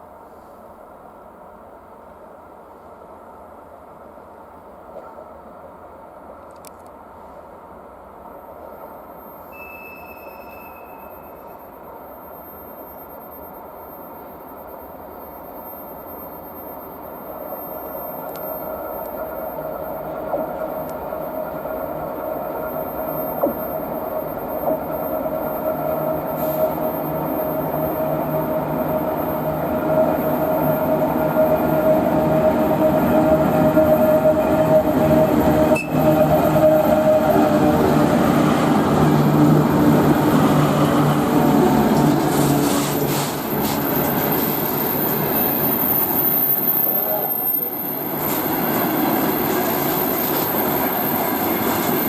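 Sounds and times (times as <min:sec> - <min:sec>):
thin steady ringing tone: 0:08.3 - 0:37.4
train wheels rumbling on rails: 0:17.5 - 0:52.0.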